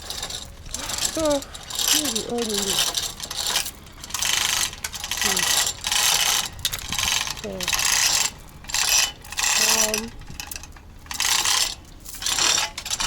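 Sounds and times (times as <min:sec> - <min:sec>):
rasping mechanical noise: 0:00.0 - 0:13.0.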